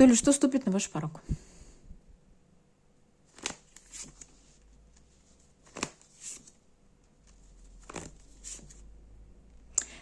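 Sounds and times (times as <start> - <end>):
cards swishing and tapping: 3.3 - 6.6, 7.2 - 8.9.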